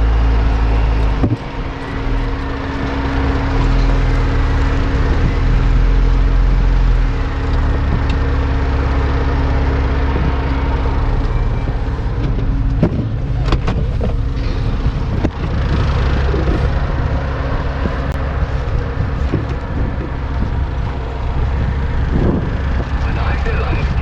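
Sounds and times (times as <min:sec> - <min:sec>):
vehicle engine low drone: 0:00.0 - 0:24.0
sharp knocks and rattles: 0:10.0 - 0:23.0.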